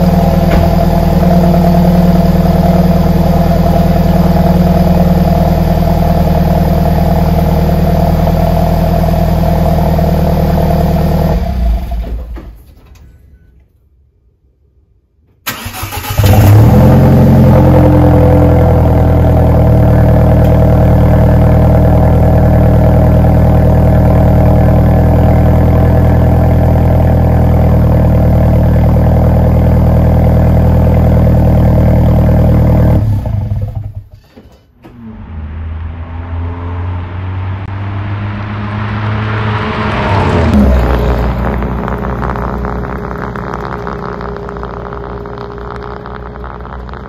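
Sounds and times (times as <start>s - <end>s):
engine cranking: 15.5s - 16.5s.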